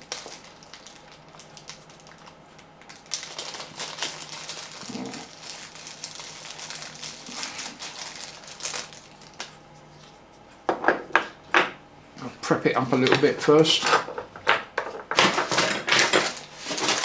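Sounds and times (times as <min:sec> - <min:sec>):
crinkling rustles: 0:00.0 - 0:10.6, 0:15.1 - 0:17.0.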